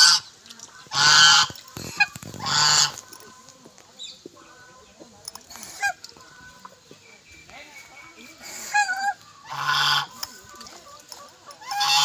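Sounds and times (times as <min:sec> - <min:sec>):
duck quacking: 0:00.9 - 0:03.0, 0:08.5 - 0:10.2, 0:11.6 - 0:12.0.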